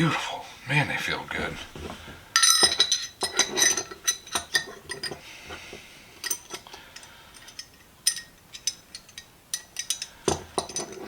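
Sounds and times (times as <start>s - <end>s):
pliers clinking against metal: 2.4s - 5.2s, 6.2s - 11.0s.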